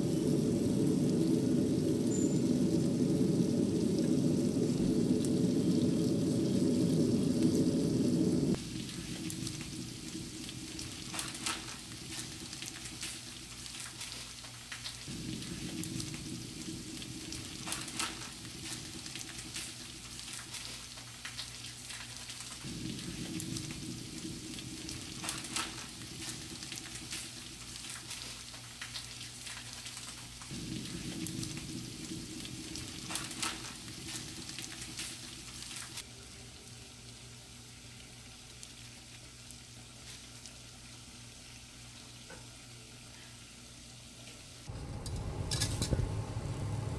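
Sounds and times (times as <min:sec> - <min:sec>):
low hum: 0:00.0 - 0:12.6, 0:44.7 - 0:46.9
food sizzling in a frying pan: 0:00.0 - 0:44.8.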